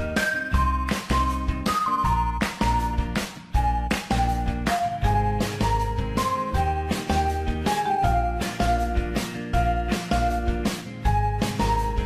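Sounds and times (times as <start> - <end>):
upbeat instrumental music: 0.0 - 12.0.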